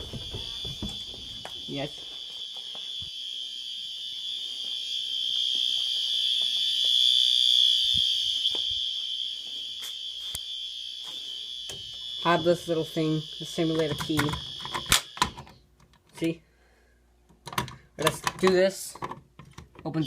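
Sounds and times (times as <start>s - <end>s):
fire alarm horn steady tone: 0.0s - 15.4s.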